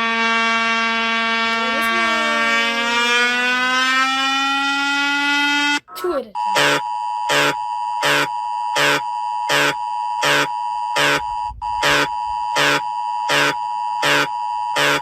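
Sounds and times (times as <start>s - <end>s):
two-note emergency alert tone: 1.4s - 5.8s
harsh buzzing pulse: 6.4s - 15.0s.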